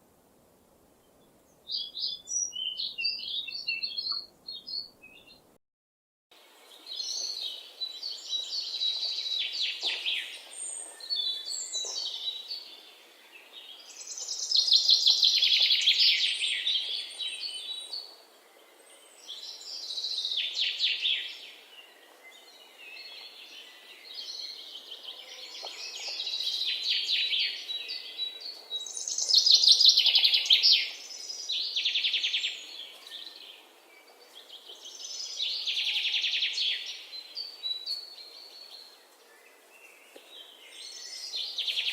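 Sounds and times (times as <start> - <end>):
faint steady hiss: 0.0 - 2.9
songbird trilled song: 1.7 - 5.4.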